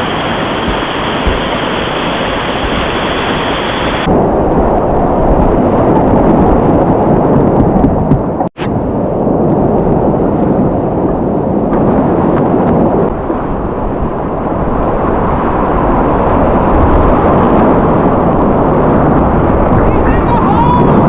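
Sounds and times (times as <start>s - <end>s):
whitewater rushing: 0.0s - 4.1s.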